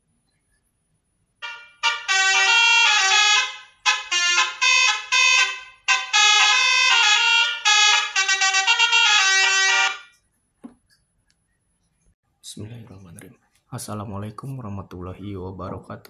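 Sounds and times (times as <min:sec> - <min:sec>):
horn melody through speaker: 0:01.4 - 0:10.1.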